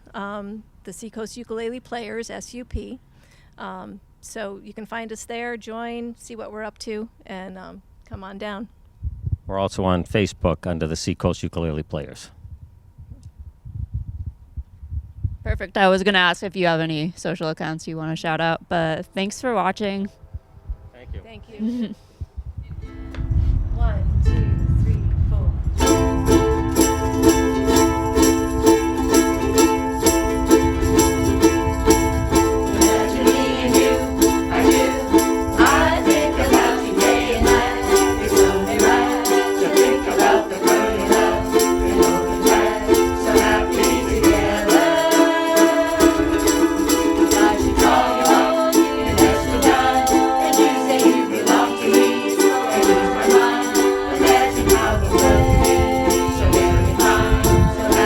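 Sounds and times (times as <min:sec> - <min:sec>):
ukuleles strumming: 0:22.8 - 0:23.4, 0:25.8 - 0:58.0
group of voices singing: 0:25.8 - 0:58.0
jingling percussion: 0:25.8 - 0:58.0.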